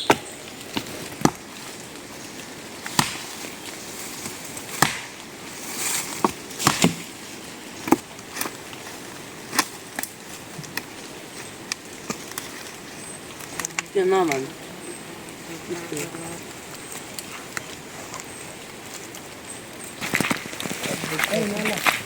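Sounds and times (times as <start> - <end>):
steady background noise: 0.0 - 22.0
sharp knocks: 2.9 - 3.3, 4.7 - 5.2.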